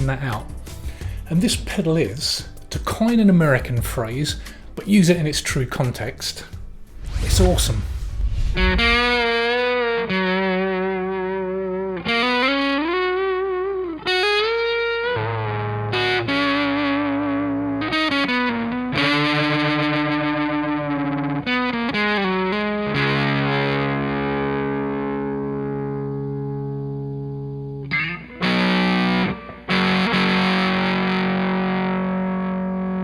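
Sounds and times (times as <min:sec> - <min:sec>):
overdriven electric guitar lead: 0:09.0 - 0:33.0.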